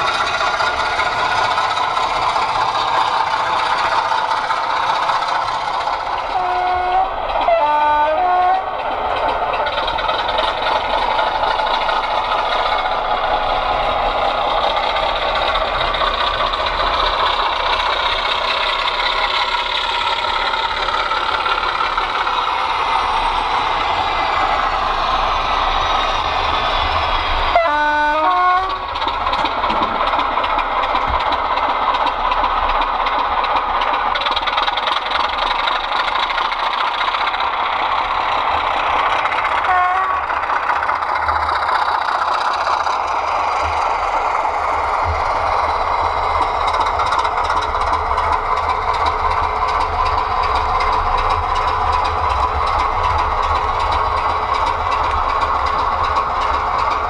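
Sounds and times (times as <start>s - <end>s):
model diesel engine sound: 0.0s - 57.0s
model train running noise: 0.0s - 57.0s
two-tone train horn: 6.3s - 8.7s, 27.5s - 28.9s, 39.6s - 40.3s.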